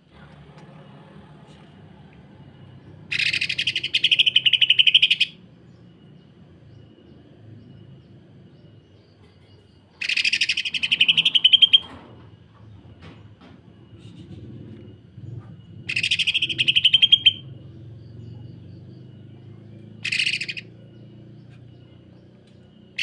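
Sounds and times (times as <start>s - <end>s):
bird rattling calls: 3.1s - 5.3s, 10.0s - 12.0s, 15.9s - 17.4s, 20.0s - 20.7s.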